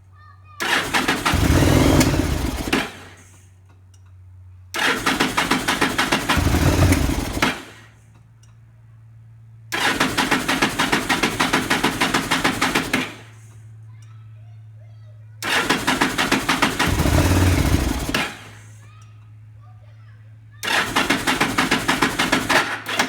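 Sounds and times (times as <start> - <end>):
motorcycle engine cranking: 0.6 - 3.4, 4.8 - 8.0, 9.7 - 13.5, 15.4 - 18.8, 20.6 - 23.0.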